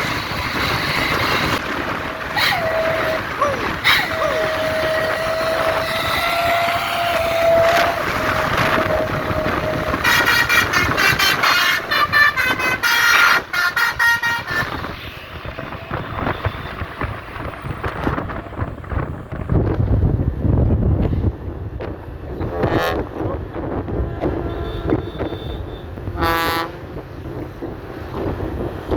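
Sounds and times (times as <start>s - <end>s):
bus air horn: 0.0s - 1.7s, 2.3s - 18.3s, 22.4s - 27.0s
traffic noise: 0.0s - 28.9s
musical horn multi-tone blasts: 2.3s - 18.3s, 22.4s - 27.2s.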